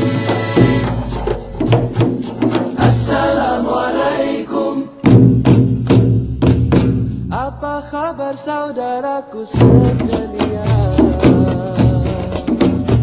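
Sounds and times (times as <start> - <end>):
percussion beats: 0.0 - 4.2, 5.0 - 7.4, 9.6 - 13.0.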